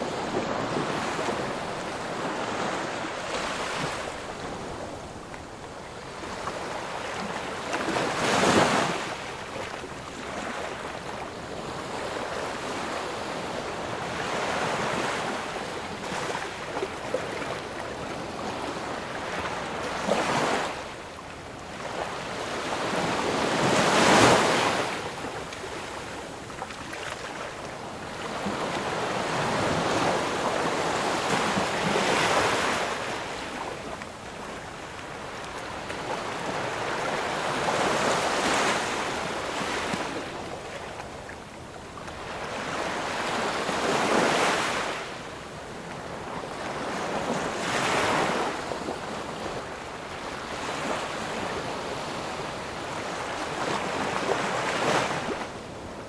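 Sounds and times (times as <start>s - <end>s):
ocean waves breaking: 0.0s - 5.3s.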